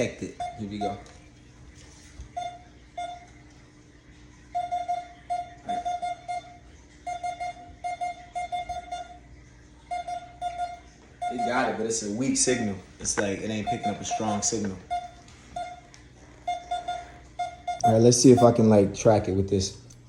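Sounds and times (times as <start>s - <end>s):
metal detector beeping: 0.3s - 1.0s, 4.5s - 9.2s, 9.9s - 15.9s, 16.5s - 18.7s.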